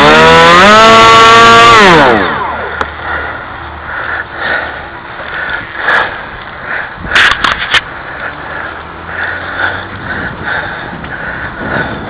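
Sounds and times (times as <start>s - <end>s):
electric motor whining: 0.0s - 2.8s.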